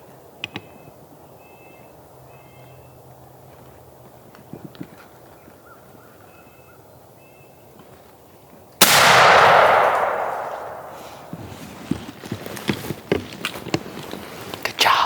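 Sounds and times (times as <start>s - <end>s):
shotgun shot echoing: 8.8s - 11.6s.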